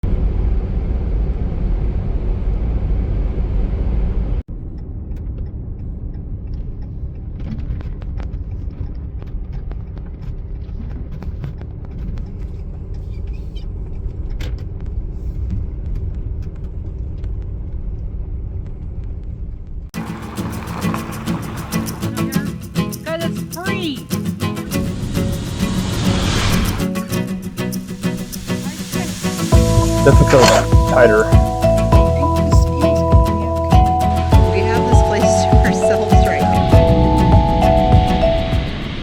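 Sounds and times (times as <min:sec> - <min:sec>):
vehicle engine and road rumble: 0:00.0 - 0:24.0, 0:24.6 - 0:39.0
wind noise: 0:24.7 - 0:39.0.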